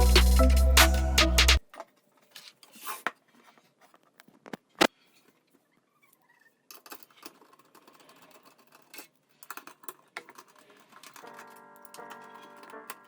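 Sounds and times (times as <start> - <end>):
background music: 0.0 - 1.6
parts clicking and rustling: 6.7 - 13.0.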